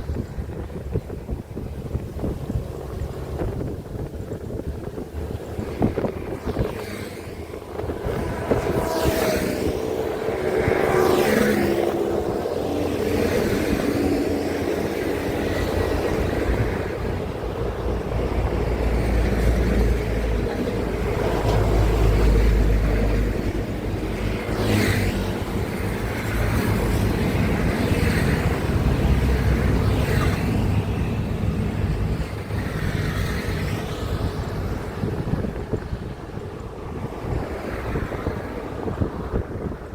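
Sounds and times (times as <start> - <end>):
highway traffic rumble: 0.0 - 39.9
trucks passing close by: 0.0 - 39.9.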